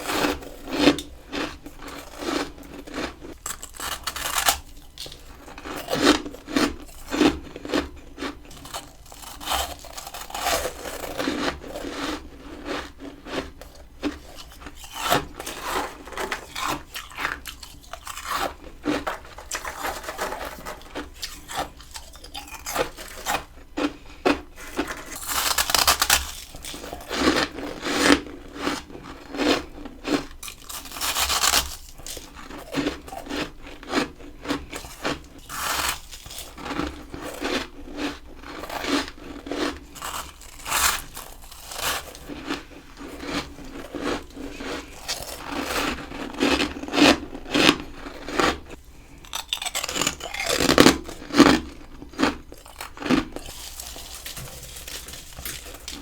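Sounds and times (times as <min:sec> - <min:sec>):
frost being crunched by teeth: 0:24.6 - 0:27.6, 0:49.2 - 0:51.8.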